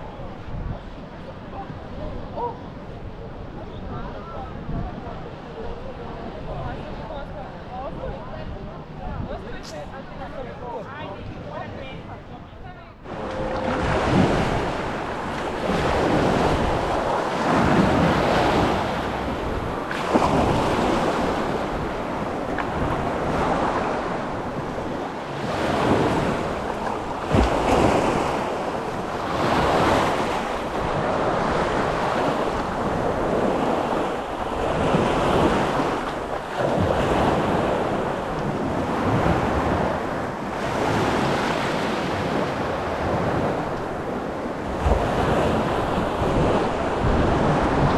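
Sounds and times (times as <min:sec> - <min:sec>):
wind buffeting microphone: 0:00.0 - 0:10.3, 0:13.0 - 0:47.9
wind gust thump: 0:13.0 - 0:40.0, 0:44.7 - 0:47.9
sea waves on beach: 0:13.0 - 0:47.9.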